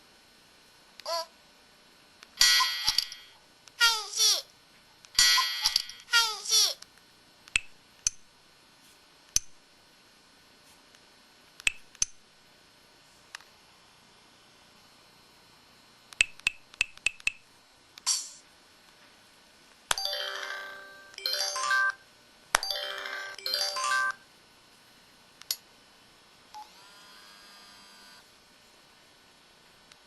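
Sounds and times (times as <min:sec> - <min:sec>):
doorbell-like electronic chime: 0:20.0 - 0:22.0, 0:22.6 - 0:24.2.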